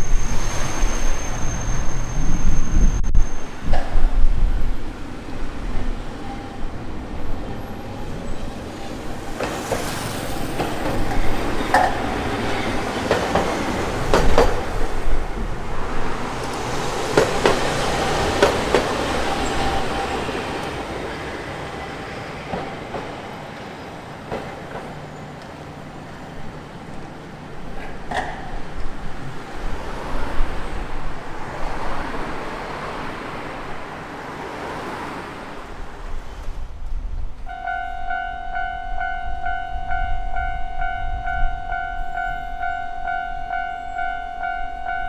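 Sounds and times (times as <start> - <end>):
tram running noise: 0.0 - 45.0
wheels clacking over rail joints: 3.4 - 36.7.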